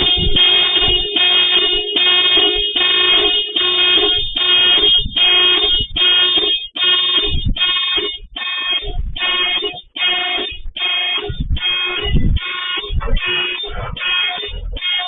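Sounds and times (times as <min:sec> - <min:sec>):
horn blasts: 0:00.0 - 0:08.2.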